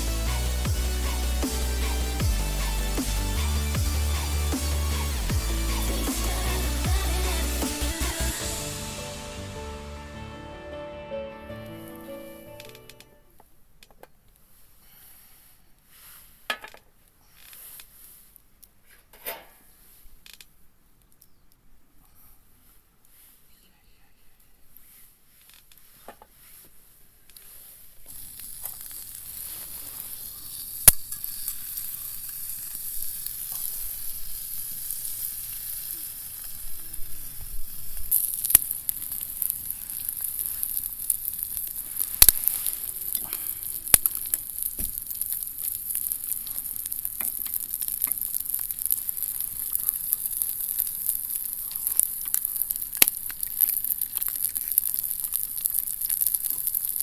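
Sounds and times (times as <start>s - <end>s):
food sizzling in a pan: 0.1s - 10.2s, 28.1s - 57.0s.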